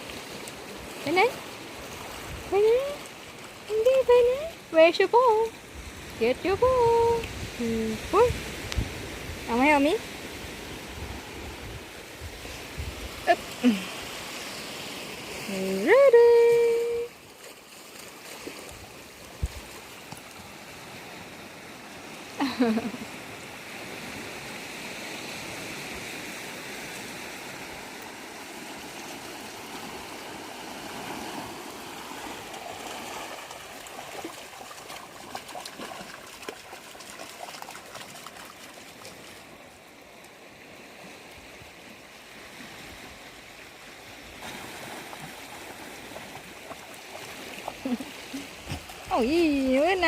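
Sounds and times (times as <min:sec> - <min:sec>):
sea water washing over beach: 0:00.0 - 0:50.0
small water splashes: 0:16.6 - 0:21.3, 0:28.4 - 0:50.0.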